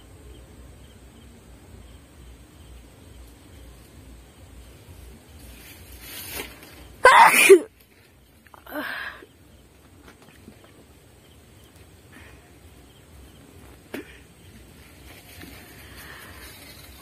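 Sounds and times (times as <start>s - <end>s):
woman sneezing: 7.0s - 7.7s
quick in-breath: 8.7s - 9.3s, 15.7s - 17.0s.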